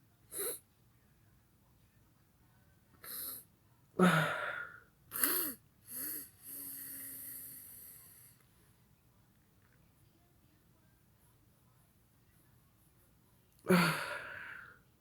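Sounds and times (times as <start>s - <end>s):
person sneezing: 13.7s - 14.5s.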